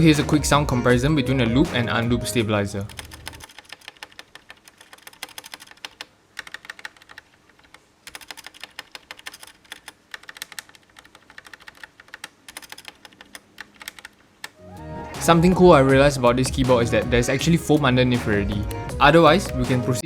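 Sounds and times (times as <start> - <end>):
mechanical keyboard key clacks: 2.9 - 14.6.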